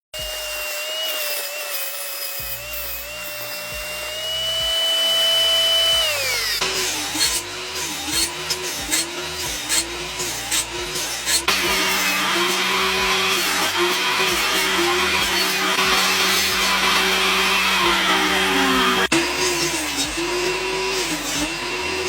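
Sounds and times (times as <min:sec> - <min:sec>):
power tool motor whining: 0:00.2 - 0:22.0
rhythmic strokes with clicks: 0:05.9 - 0:12.1.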